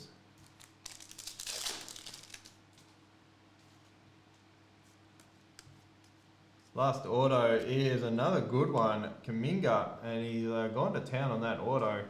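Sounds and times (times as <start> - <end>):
foil wrapper crinkling: 0.4 - 2.9.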